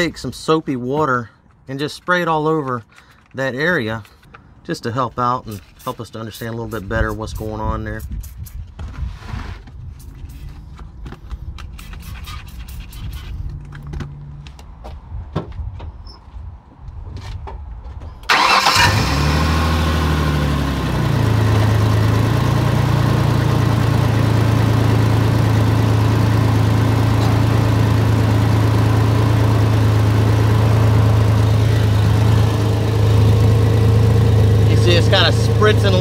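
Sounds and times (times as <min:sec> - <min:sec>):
engine starting and idling: 0:18.3 - 0:36.0
puttering exhaust: 0:18.3 - 0:36.0.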